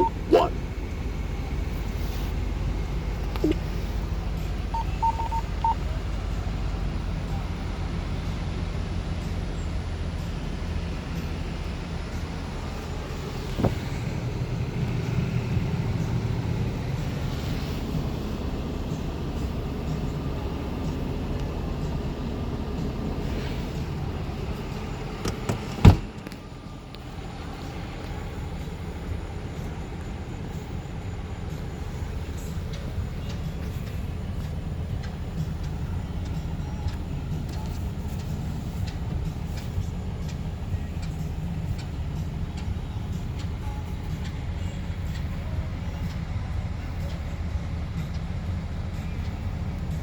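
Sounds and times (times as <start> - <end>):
short radio beeps: 0.0 - 0.6, 4.7 - 5.8
truck engine rumbling: 0.0 - 50.0.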